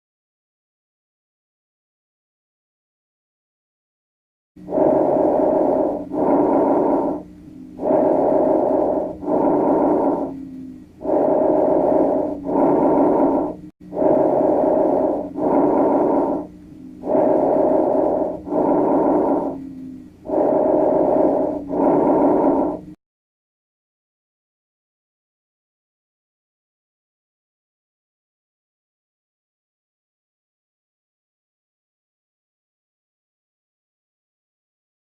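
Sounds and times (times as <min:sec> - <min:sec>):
lung breath sounds: 0:04.6 - 0:23.0
steady low hum: 0:04.6 - 0:23.0.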